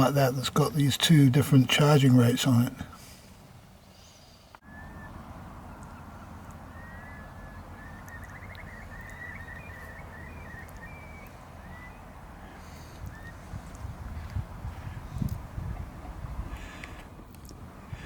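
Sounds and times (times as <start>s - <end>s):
outdoor background hiss: 0.0s - 18.0s
birds chirping and trilling: 3.6s - 17.0s.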